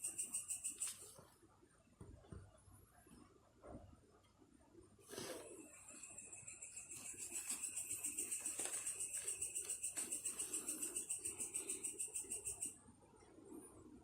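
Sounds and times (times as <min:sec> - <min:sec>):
high-pitched insect trill: 0:00.0 - 0:01.0, 0:05.5 - 0:12.8.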